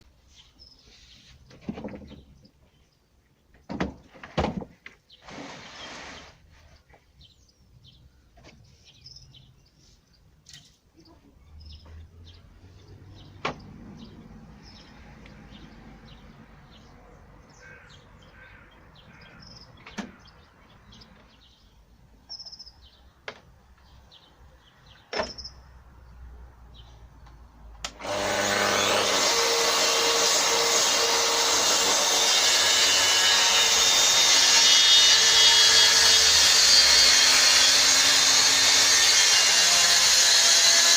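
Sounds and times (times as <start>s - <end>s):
birds chirping: 4.8s - 39.4s
track saw cutting plywood: 27.9s - 40.9s.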